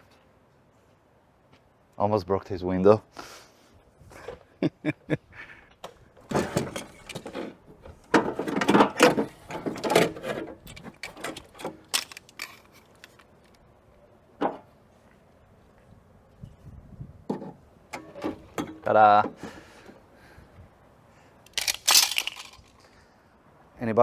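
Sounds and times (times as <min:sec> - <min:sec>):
parts clicking and rattling: 0:05.8 - 0:13.6, 0:17.3 - 0:20.1, 0:21.4 - 0:23.0.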